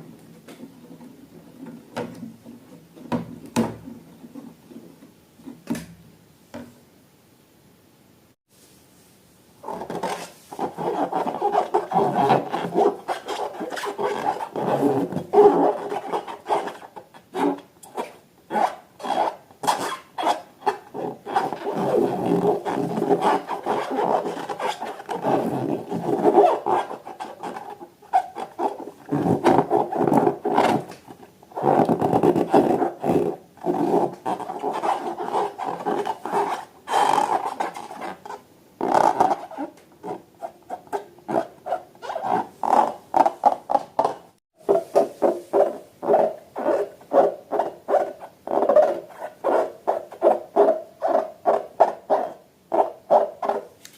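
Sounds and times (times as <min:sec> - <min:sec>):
rubber balloons squeaking: 0:09.6 - 0:53.8.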